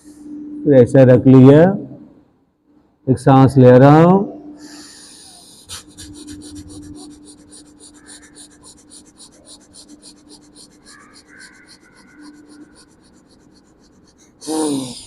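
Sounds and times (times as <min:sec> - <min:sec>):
rapid forceful breathing: 0:04.6 - 0:15.0.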